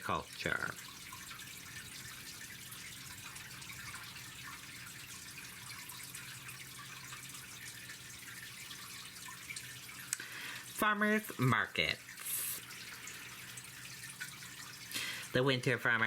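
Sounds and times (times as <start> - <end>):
low electrical hum: 0.0 - 16.0
background hiss: 10.0 - 15.6.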